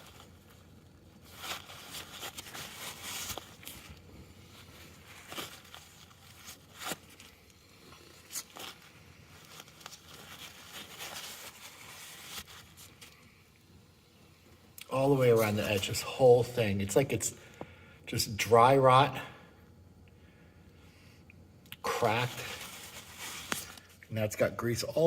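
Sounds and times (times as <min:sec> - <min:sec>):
rustling and scraping: 0:00.0 - 0:13.3, 0:22.3 - 0:24.0.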